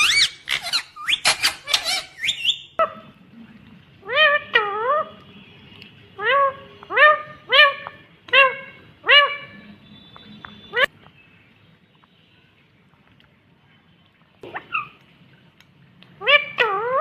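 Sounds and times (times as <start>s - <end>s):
parakeet arched calls: 0.0s - 3.0s
parakeet chattering: 0.0s - 3.0s.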